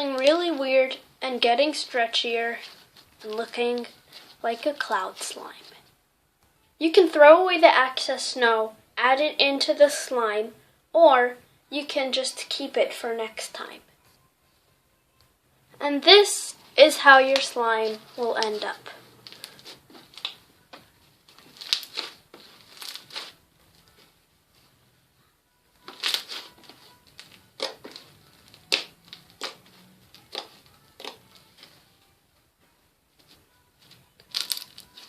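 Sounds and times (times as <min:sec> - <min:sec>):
faint background music: 0:00.0 - 0:35.0
slime clicking and popping: 0:28.5 - 0:29.6.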